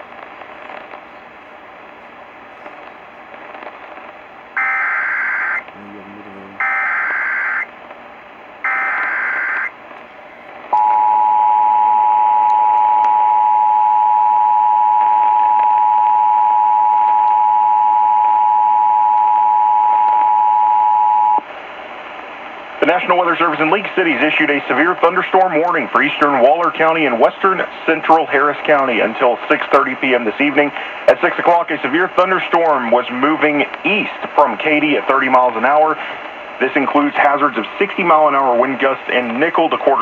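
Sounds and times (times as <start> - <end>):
radio hiss: 0.0 - 10.9, 19.4 - 40.0
loud two-tone attention signal: 4.6 - 5.6, 6.6 - 7.7, 8.6 - 9.7.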